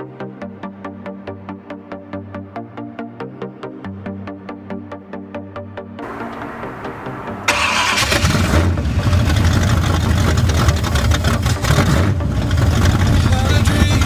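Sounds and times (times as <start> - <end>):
car engine starting and rumbling: 6.0 - 14.0.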